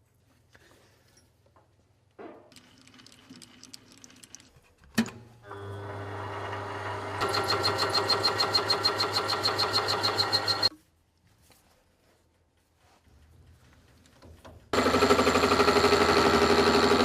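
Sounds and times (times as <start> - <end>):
small electric motor humming: 5.5 - 10.7.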